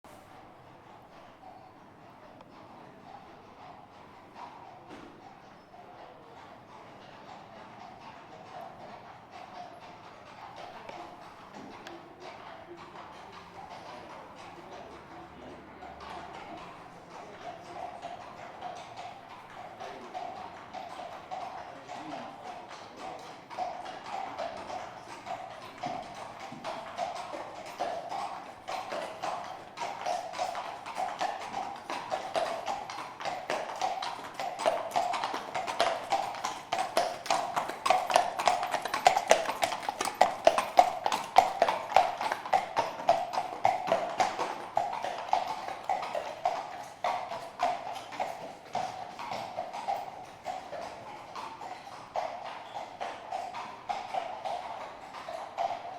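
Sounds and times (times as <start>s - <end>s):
horse hooves on pavement: 0.1s - 55.9s.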